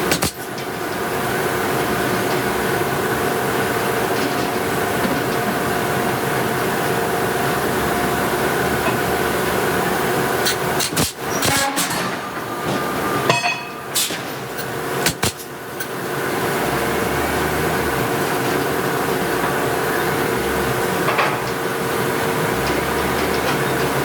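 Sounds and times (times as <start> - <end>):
hammer striking hot steel: 0.0 - 0.7, 10.4 - 16.0
machine drone: 0.0 - 24.0.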